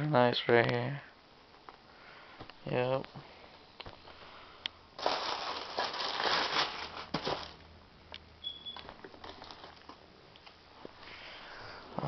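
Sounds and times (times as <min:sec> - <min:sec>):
packaging rustling and crinkling: 0:05.0 - 0:07.6, 0:08.8 - 0:10.0.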